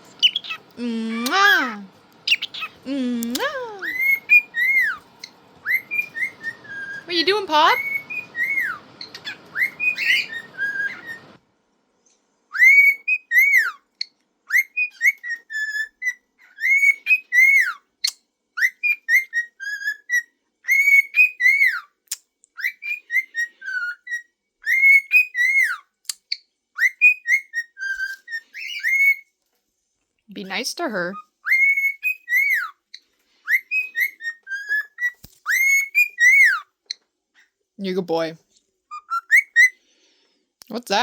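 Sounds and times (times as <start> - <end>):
cockatiel whistling: 0.1 - 11.4, 12.5 - 13.8, 18.6 - 21.9, 22.6 - 25.8, 31.4 - 32.8, 33.4 - 36.6, 38.9 - 39.8.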